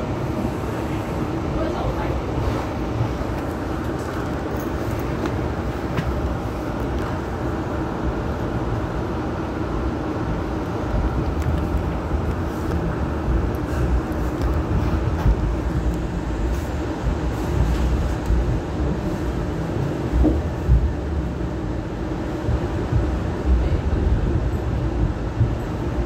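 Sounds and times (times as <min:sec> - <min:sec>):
train wheels rumbling on rail: 0:00.0 - 0:26.0.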